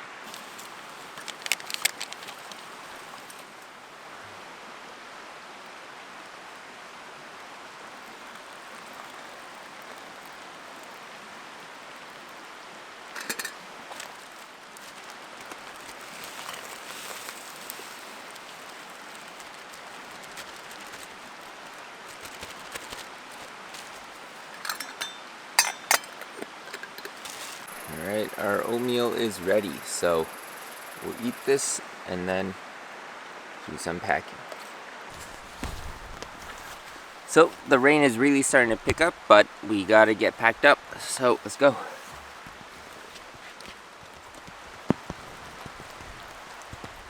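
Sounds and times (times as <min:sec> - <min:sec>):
drizzle falling on a tarp: 0:00.2 - 0:03.7, 0:07.8 - 0:24.9, 0:25.6 - 0:29.8, 0:34.5 - 0:37.7, 0:41.8 - 0:47.0
river rapids hissing: 0:06.2 - 0:22.1, 0:26.0 - 0:43.6.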